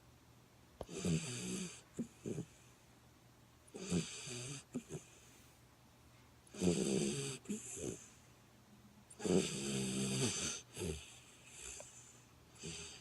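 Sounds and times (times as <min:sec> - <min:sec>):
puppy snoring: 0:00.8 - 0:02.7, 0:03.7 - 0:05.3, 0:06.5 - 0:08.2, 0:09.1 - 0:13.0.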